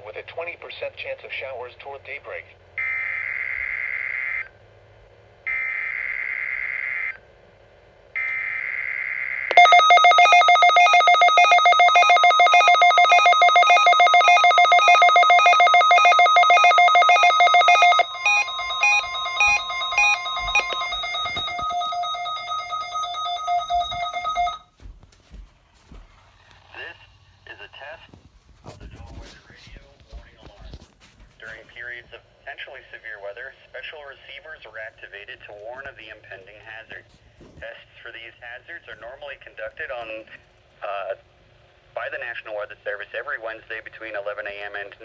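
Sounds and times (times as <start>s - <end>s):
rapid pulsing alert beeps: 9.6s - 24.6s
steady tone: 12.9s - 24.6s.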